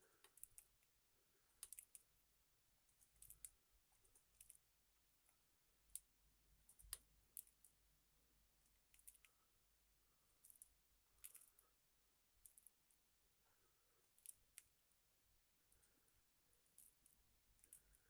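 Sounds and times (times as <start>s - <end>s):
faint sharp clicks and taps: 0.0s - 2.2s, 2.9s - 7.8s, 8.6s - 9.5s.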